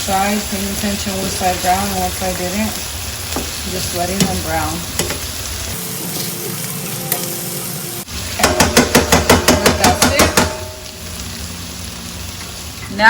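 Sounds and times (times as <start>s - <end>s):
chicken sizzling in a pan: 0.0s - 13.0s
utensil knocking on pan: 3.3s - 5.2s, 8.4s - 10.9s.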